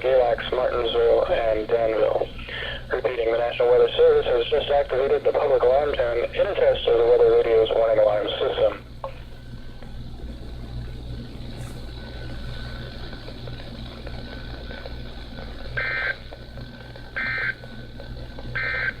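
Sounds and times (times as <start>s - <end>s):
radio hum and hiss: 0.0s - 19.0s
short raspy data bursts: 15.7s - 17.7s, 18.5s - 19.0s.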